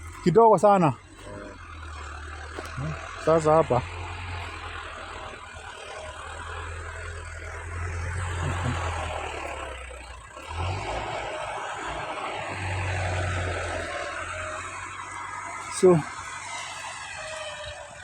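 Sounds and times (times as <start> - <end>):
tractor engine droning: 0.0 - 18.0.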